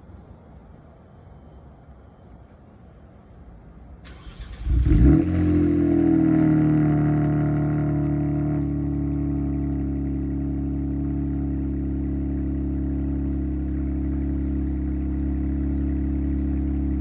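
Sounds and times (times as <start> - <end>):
car engine starting and idling: 4.0 - 17.0.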